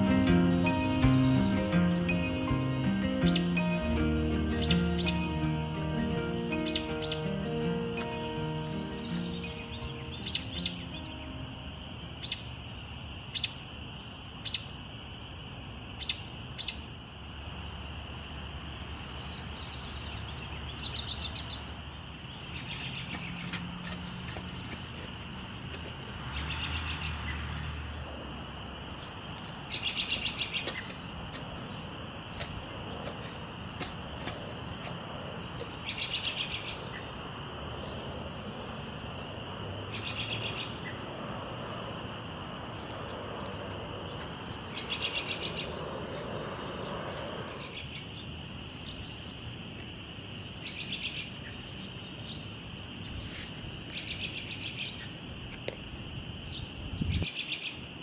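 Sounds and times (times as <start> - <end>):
bird trilling: 2.0 - 12.7, 43.9 - 48.1
bird chips: 3.2 - 14.9, 17.6 - 27.8, 29.2 - 38.0, 41.7 - 49.1.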